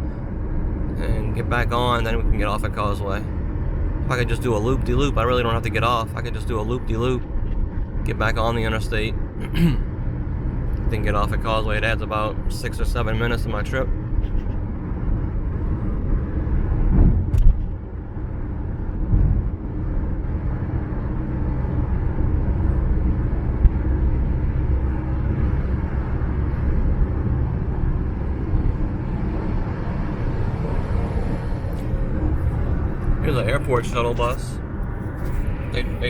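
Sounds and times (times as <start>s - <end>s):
car road rumble: 0.0s - 36.0s.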